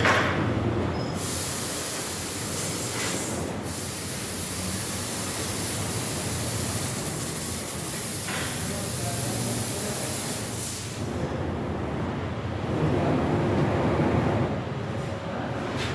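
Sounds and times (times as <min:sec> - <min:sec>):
high hiss of cutting: 0:01.2 - 0:11.1.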